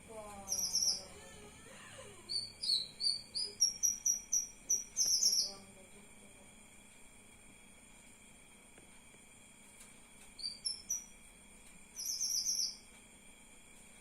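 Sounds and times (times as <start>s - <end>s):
bird chirping: 0.4s - 1.4s, 2.3s - 5.6s, 10.4s - 11.2s, 11.9s - 12.9s.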